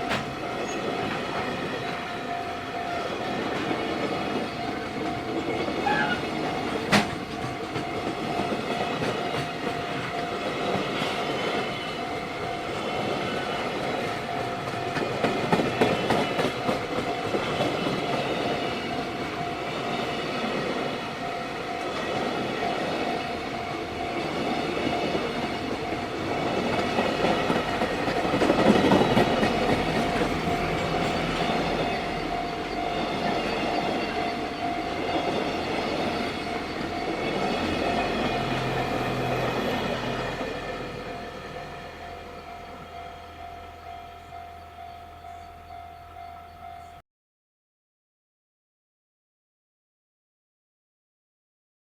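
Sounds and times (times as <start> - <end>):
train wheels clattering over rails: 0.0 - 2.4, 3.3 - 11.8, 12.8 - 20.0, 23.9 - 41.1
level crossing bell ringing: 0.0 - 15.5, 16.5 - 47.0.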